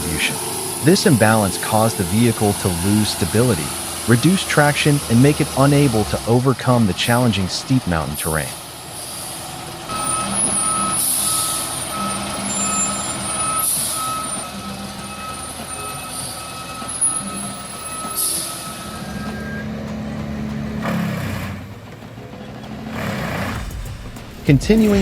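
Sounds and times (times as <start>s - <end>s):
air hiss bursts: 0.0s - 7.2s, 8.5s - 14.4s
reversing alarm beeping: 0.0s - 20.8s
truck engine running: 0.0s - 25.0s.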